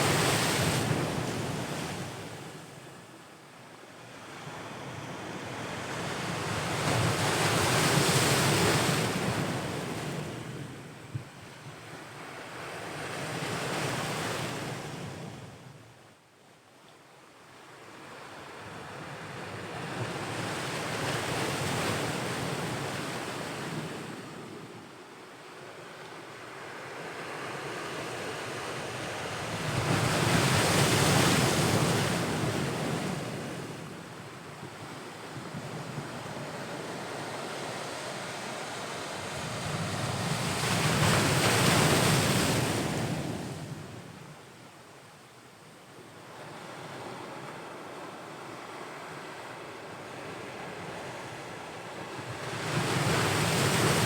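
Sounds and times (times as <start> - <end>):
ocean waves breaking on shore: 26.3 - 44.1.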